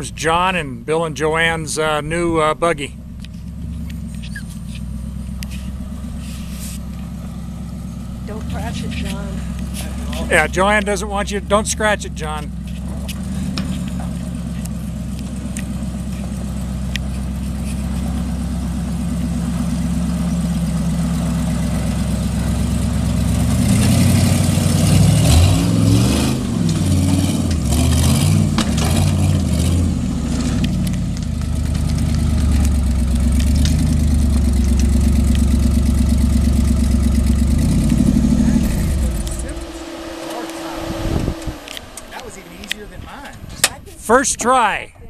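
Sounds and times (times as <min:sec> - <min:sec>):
buggy engine idling and revving: 0:00.0 - 0:44.4
scraping and crackling on rock: 0:30.5 - 0:35.4.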